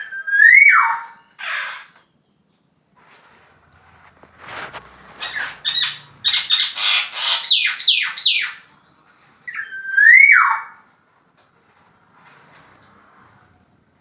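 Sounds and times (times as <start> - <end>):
oriole calling: 5.1 - 8.6.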